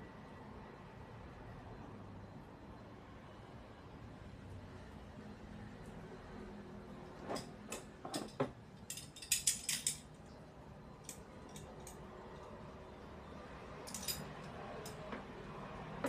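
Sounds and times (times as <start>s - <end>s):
small metal objects clinking: 8.9s - 10.0s, 13.9s - 15.0s.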